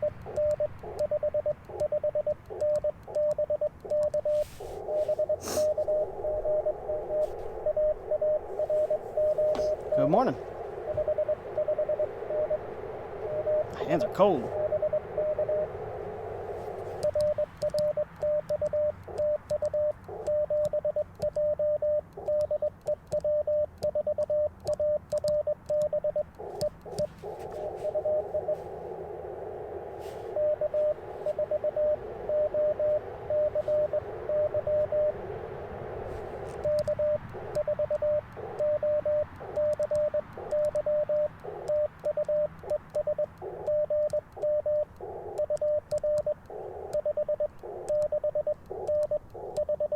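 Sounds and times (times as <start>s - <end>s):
morse code tone: 0.0s - 49.9s
radio band hiss: 4.1s - 17.6s, 26.3s - 49.9s.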